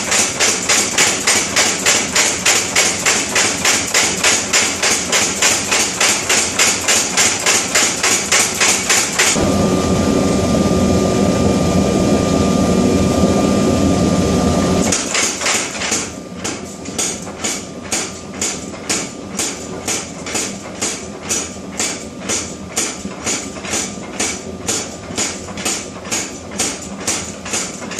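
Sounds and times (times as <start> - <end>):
power hammer pounding steel: 0.0 - 9.4, 14.9 - 27.9
steady roar with faint whine: 9.2 - 15.2.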